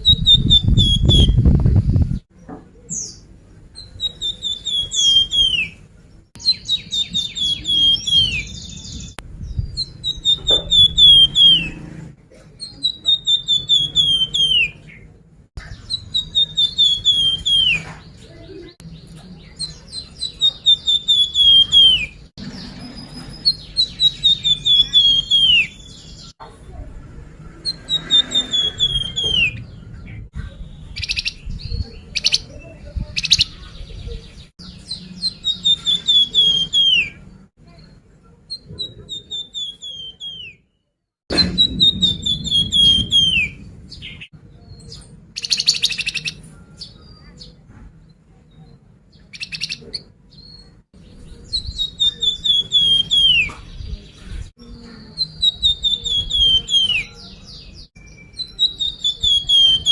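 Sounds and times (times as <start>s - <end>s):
bird trilling song: 0.0s - 26.4s, 27.5s - 47.6s, 48.5s - 59.9s
harsh bird chattering: 3.8s - 5.7s, 6.4s - 8.8s, 9.8s - 11.8s, 12.5s - 14.9s, 15.6s - 18.7s, 19.4s - 25.8s, 27.6s - 33.8s, 34.6s - 37.2s, 45.4s - 46.4s, 49.2s - 50.1s, 55.0s - 57.1s.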